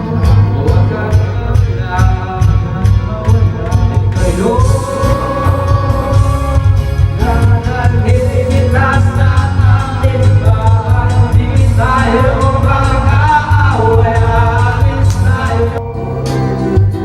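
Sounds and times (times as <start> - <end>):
heavy bass: 0.0 - 17.0
person singing: 0.0 - 17.0
drum beat: 3.3 - 15.4.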